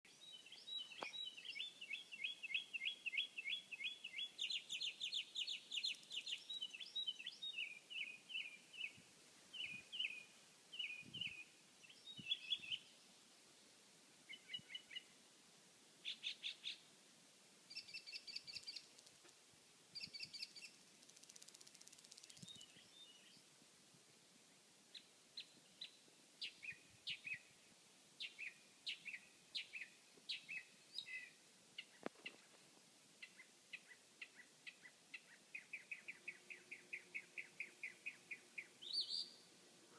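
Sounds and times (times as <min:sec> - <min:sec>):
bird singing chirps and trills: 0:00.1 - 0:13.0, 0:17.7 - 0:18.9, 0:20.0 - 0:23.4, 0:28.2 - 0:32.0, 0:33.2 - 0:39.5.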